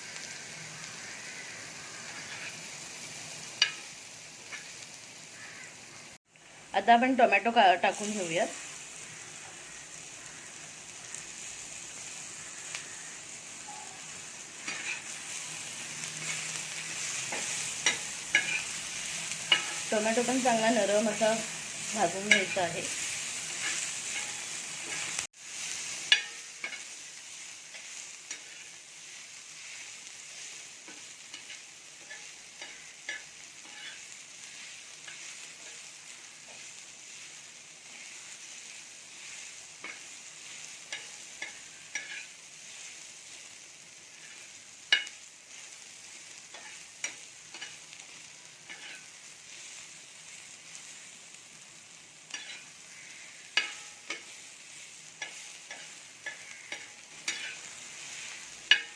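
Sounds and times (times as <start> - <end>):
onion frying in hot oil: 0.0 - 58.9
spatula stirring and scraping: 2.0 - 2.7, 14.6 - 43.1, 48.6 - 49.8, 52.3 - 58.9.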